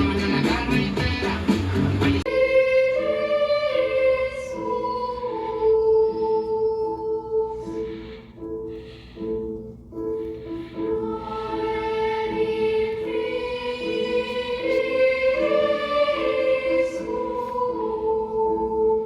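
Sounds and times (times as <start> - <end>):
choir singing: 2.2 - 8.1, 10.7 - 19.0.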